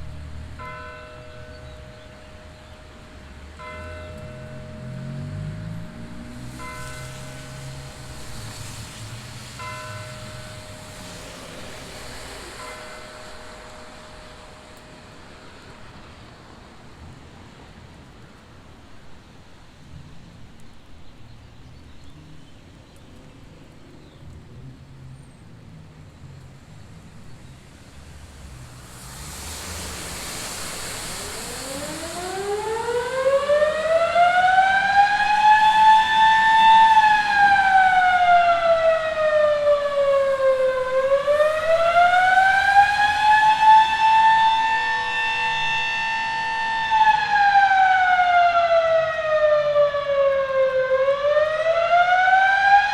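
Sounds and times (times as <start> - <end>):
civil defense siren wailing: 0.0 - 19.6, 24.4 - 52.9
rushing hiss: 6.0 - 17.0, 26.9 - 34.1, 34.8 - 38.2, 39.8 - 46.4.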